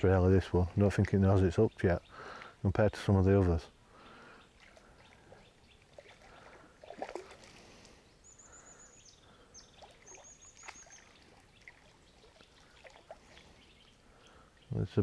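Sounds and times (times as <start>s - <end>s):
fish splashing in water: 4.6s - 7.9s, 9.7s - 13.6s.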